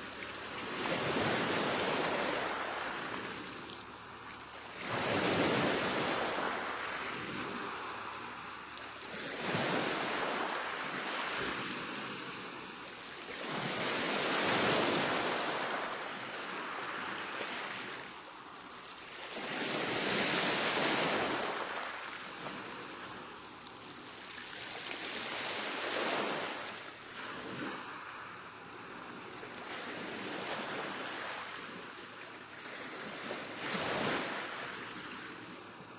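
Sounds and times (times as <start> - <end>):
rough sea waves breaking: 0.0 - 18.5, 19.1 - 23.6, 24.2 - 32.0, 32.6 - 35.9.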